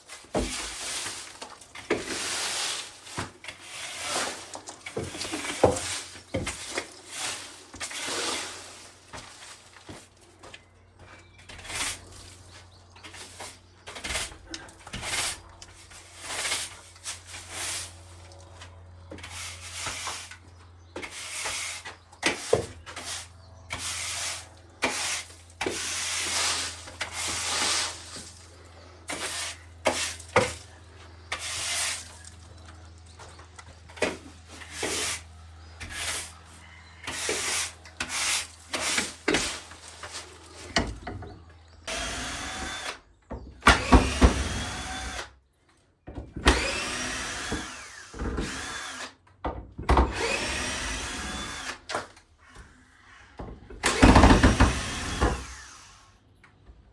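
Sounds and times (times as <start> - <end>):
power drill running: 41.9 - 43.0, 43.6 - 45.3, 46.4 - 49.2, 50.0 - 52.0, 53.8 - 56.1.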